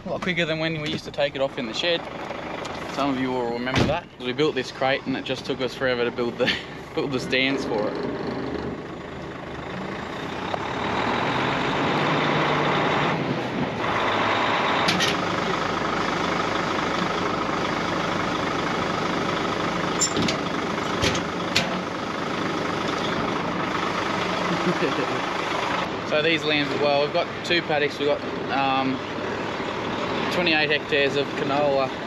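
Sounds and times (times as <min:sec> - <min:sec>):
road noise: 0:00.0 - 0:32.0
truck engine running: 0:00.0 - 0:32.0
sharp knocks and rattles: 0:19.9 - 0:22.0.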